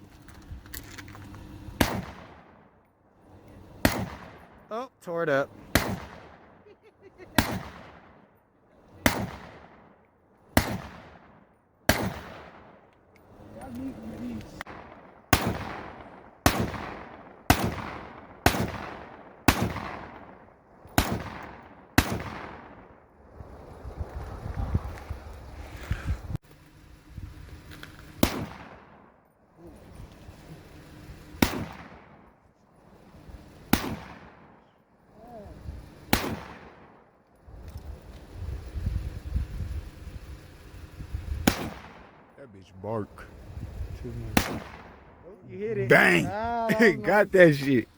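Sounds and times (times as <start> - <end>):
gunshot echo: 1.8 - 2.4, 5.7 - 6.4, 28.2 - 28.9, 31.4 - 32.0, 41.4 - 42.0, 44.4 - 44.9
pistol gunshots: 1.8 - 2.5, 3.8 - 4.6, 5.7 - 6.6, 7.4 - 8.2, 9.0 - 9.8, 10.6 - 12.7, 14.7 - 20.3, 20.9 - 22.8, 28.2 - 29.0, 31.4 - 32.2, 33.7 - 34.5, 36.1 - 36.9, 41.4 - 42.2, 44.4 - 45.0
pistol shots echoing: 5.7 - 6.4.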